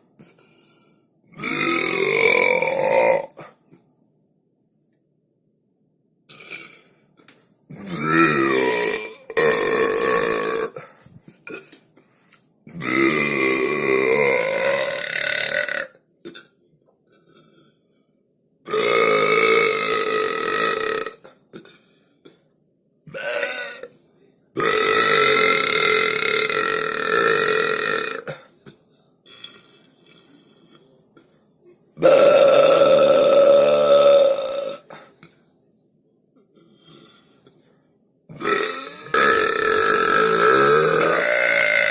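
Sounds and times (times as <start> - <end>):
loud long burps: 1.3 - 3.6, 6.3 - 6.9, 7.7 - 10.9, 12.7 - 16.5, 18.7 - 21.8, 23.1 - 23.9, 24.6 - 28.5, 32.0 - 35.0, 38.3 - 41.9.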